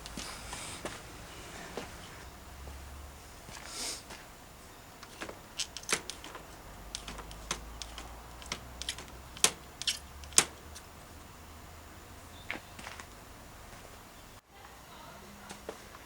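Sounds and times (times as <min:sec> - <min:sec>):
sharp clicks and taps: 0:05.0 - 0:10.9.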